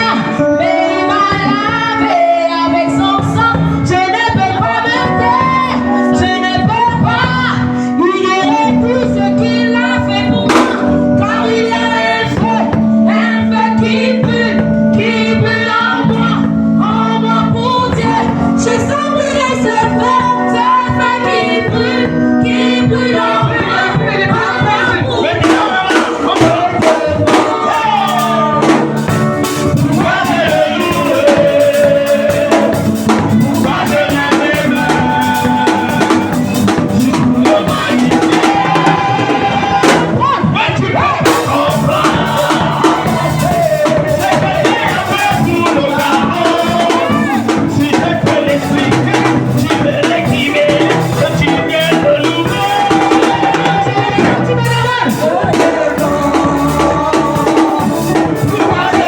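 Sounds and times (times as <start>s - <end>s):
drum kit beat: 0.0s - 59.0s
worship music: 0.0s - 59.0s.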